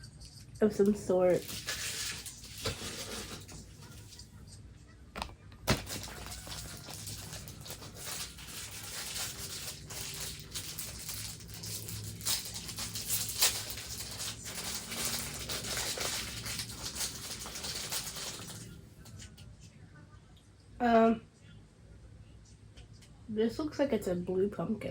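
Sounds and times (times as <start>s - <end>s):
plastic packaging crinkling: 0.6s - 4.4s, 5.6s - 19.2s.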